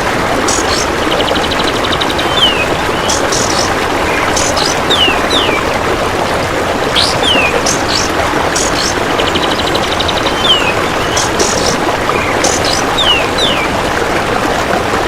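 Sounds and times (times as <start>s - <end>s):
rapid ticking trill: 0.4s - 5.6s, 7.0s - 13.7s
high bird chirps: 0.5s - 5.6s, 7.0s - 13.7s
bird whistling falling notes: 7.0s - 13.7s.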